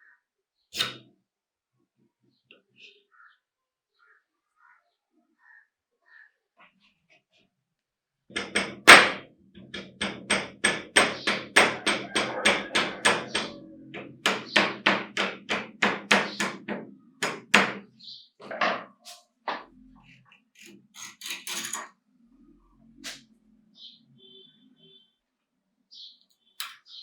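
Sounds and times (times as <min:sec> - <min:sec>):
hammer strikes with ringing: 0:09.8 - 0:17.8.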